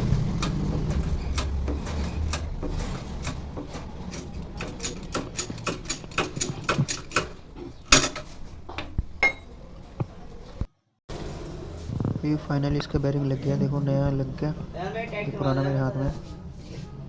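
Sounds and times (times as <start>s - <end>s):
metallic clicks and knocks: 0.1s - 9.4s.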